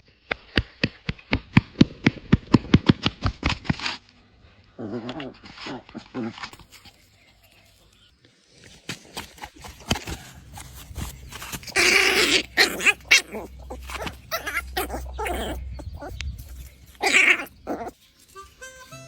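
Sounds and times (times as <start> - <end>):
puppy barking: 10.0 - 18.0
harmonica music: 18.2 - 19.0.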